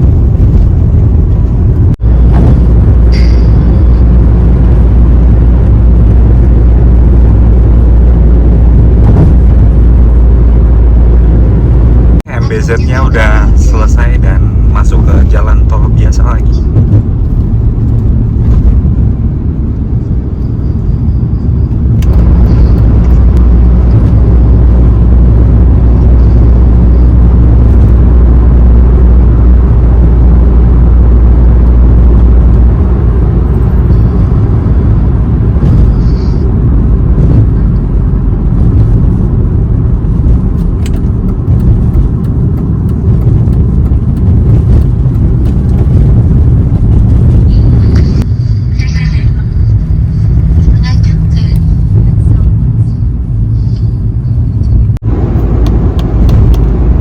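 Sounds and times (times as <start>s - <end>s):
car engine and tyre rumble: 0.0s - 57.0s.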